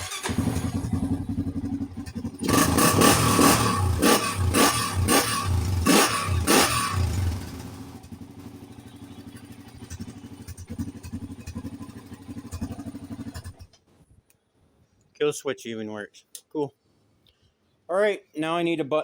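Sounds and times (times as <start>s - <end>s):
engine revving and idling: 0.0s - 13.7s.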